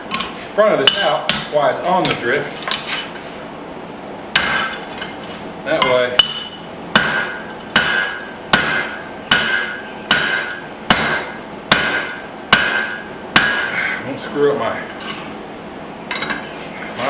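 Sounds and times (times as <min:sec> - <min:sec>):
hammer striking hot steel: 0:00.1 - 0:02.2, 0:04.3 - 0:05.2, 0:05.8 - 0:13.8.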